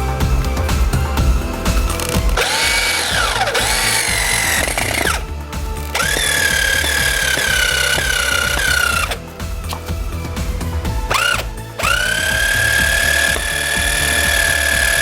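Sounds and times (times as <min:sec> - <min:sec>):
cordless drill motor running: 0:01.4 - 0:15.0.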